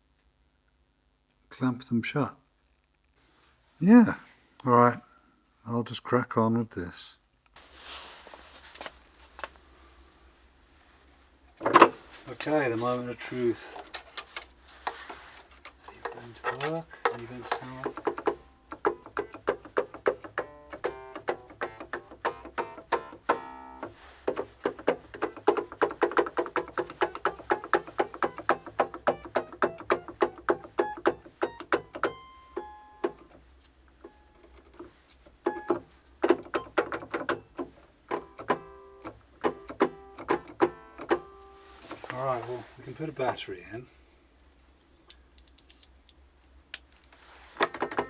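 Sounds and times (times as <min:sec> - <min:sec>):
clavinet notes and chords: 0:16.5 - 0:33.3.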